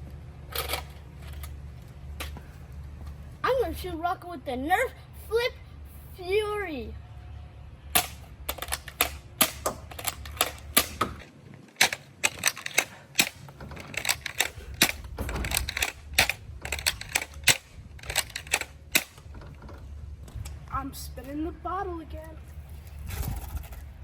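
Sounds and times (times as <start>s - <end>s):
toy blaster firing plastic clacks: 8.0s - 19.3s.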